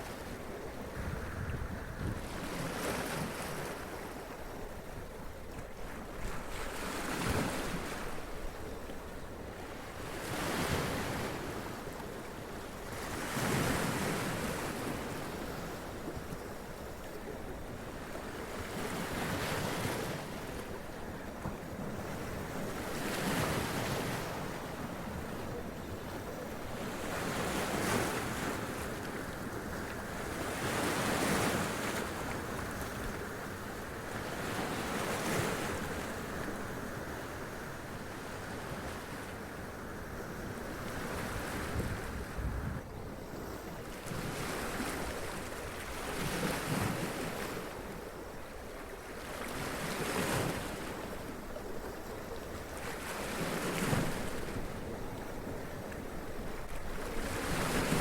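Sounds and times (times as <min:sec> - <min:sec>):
sea waves breaking over rocks: 0:43.4 - 0:58.0.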